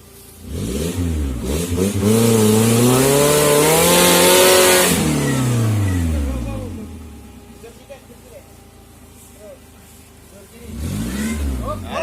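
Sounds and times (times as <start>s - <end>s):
car engine revving hard: 0.4s - 7.4s, 10.6s - 12.0s.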